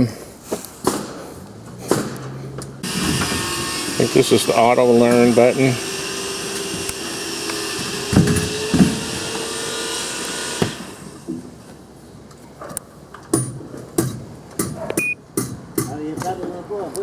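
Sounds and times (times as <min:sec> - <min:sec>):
sharp knocks: 0:00.8 - 0:03.5, 0:08.0 - 0:09.3, 0:13.3 - 0:16.4
power tool running: 0:01.7 - 0:11.6.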